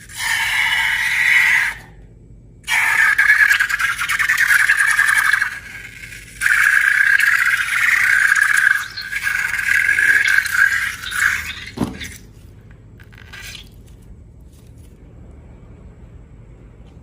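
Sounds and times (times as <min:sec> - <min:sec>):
faint handling sounds: 0:12.3 - 0:15.1.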